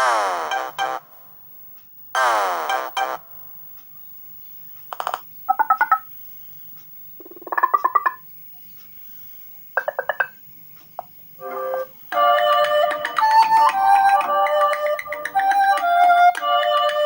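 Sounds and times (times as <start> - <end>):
pulsing electronic ringtone: 5.5 - 6.0, 7.2 - 8.2.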